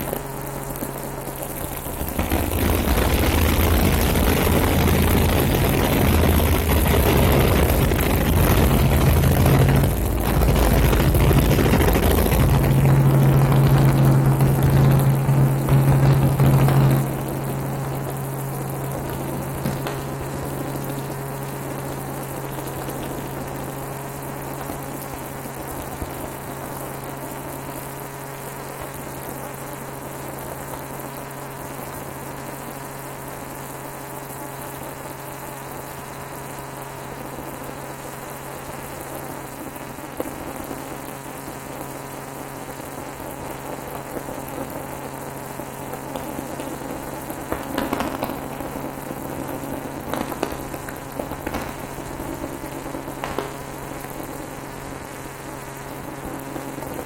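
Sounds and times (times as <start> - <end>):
faint steady tones: 0.0 - 23.7
helicopter drone: 1.6 - 22.6.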